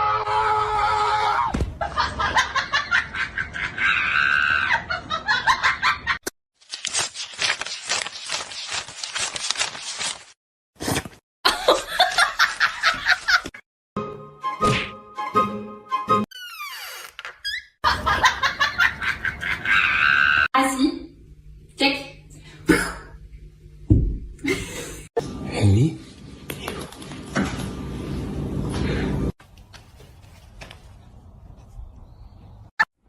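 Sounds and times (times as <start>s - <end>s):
people laughing: 1.8s - 6.2s, 17.8s - 20.4s.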